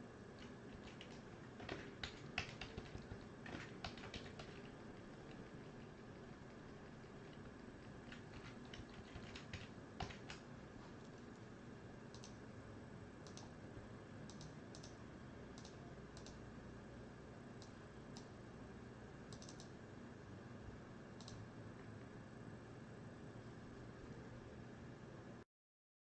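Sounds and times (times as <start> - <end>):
low background hiss: 0.0 - 25.4
keyboard and mouse clicks: 0.4 - 11.4, 12.1 - 12.4, 13.2 - 13.5, 14.3 - 16.4, 19.3 - 19.8, 21.2 - 21.4.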